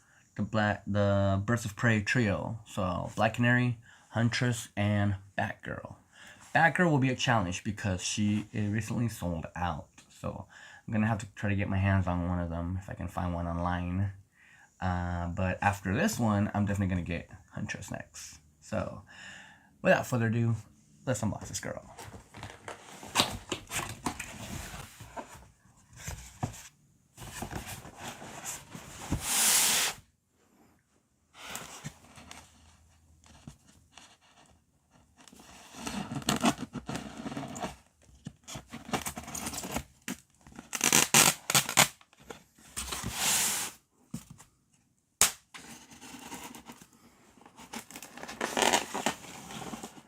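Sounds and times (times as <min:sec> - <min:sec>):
tape and cardboard tearing: 0:29.2 - 0:30.0, 0:40.6 - 0:42.1, 0:47.8 - 0:49.2.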